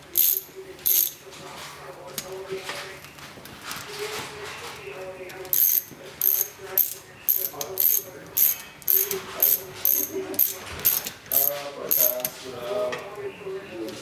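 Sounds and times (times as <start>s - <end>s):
metallic ratcheting: 0.2s - 1.2s, 5.6s - 12.3s.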